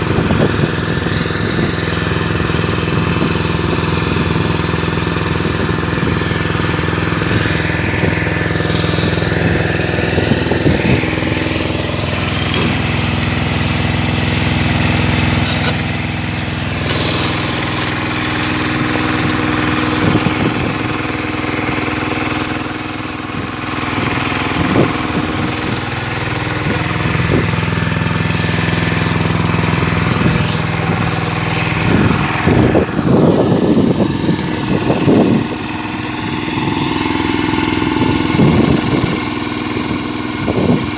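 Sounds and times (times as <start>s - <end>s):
engine running steadily: 0.0s - 40.9s
short sharp metallic noises: 15.4s - 15.9s.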